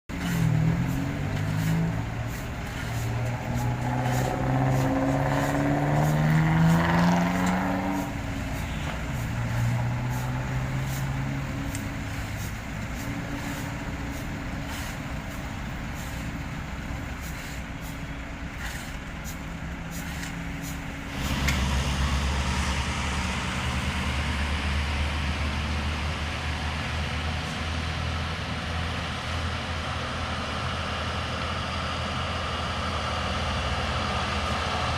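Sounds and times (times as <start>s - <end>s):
deep steady engine hum: 0.1s - 34.9s
heavy machinery diesel engines: 0.1s - 34.9s.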